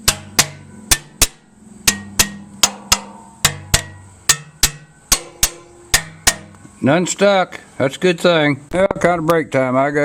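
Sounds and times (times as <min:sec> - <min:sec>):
hammer tapping on metal: 0:00.0 - 0:06.7.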